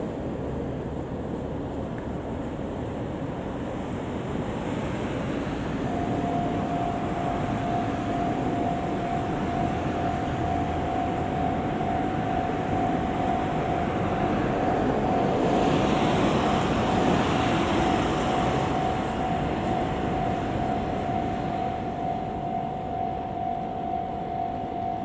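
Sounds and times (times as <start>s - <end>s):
outdoor rushing noise: 0.0s - 23.0s
train approaching: 0.0s - 25.0s
level-crossing warning bell: 3.0s - 25.0s.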